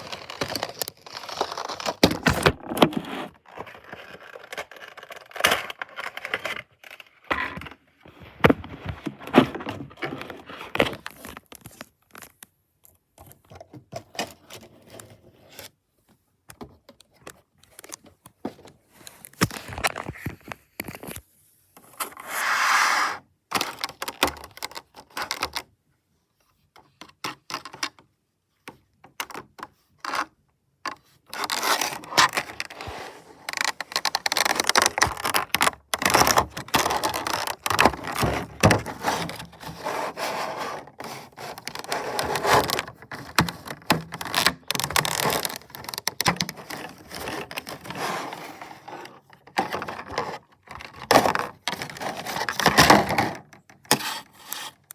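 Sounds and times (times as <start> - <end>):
cardboard and plastic packaging crackling: 0.0 - 12.6, 31.3 - 54.9.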